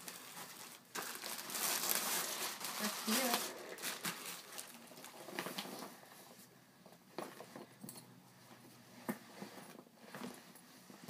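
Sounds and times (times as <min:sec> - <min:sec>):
packaging clicks and rustles: 0:00.0 - 0:05.9.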